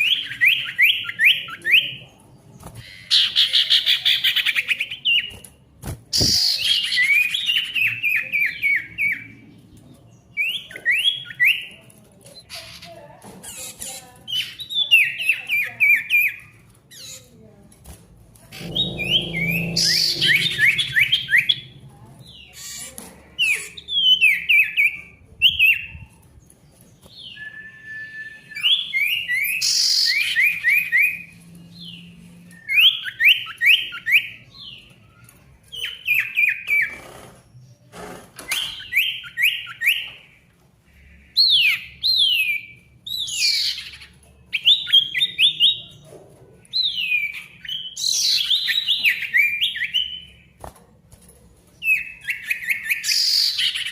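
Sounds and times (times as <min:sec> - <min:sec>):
bird singing whistled notes: 0:27.2 - 0:31.4.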